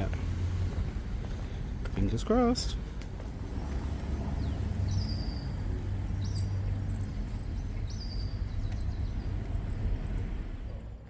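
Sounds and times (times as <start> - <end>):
low traffic rumble: 0.0 - 11.0.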